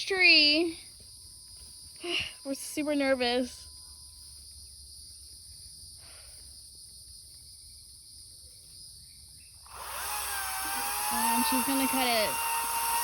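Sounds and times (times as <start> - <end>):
insects droning: 0.0 - 13.0
chainsaw starting up: 9.6 - 13.0.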